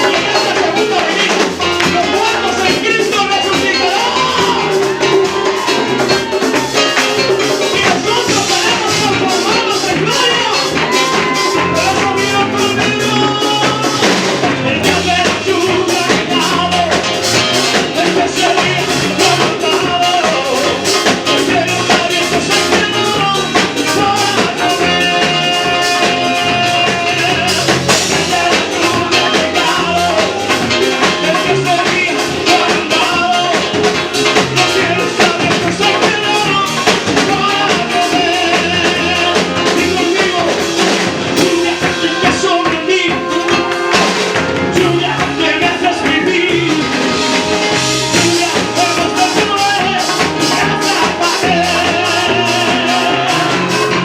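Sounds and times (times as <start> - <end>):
band playing praise music: 0.0 - 54.0
person singing: 0.0 - 54.0.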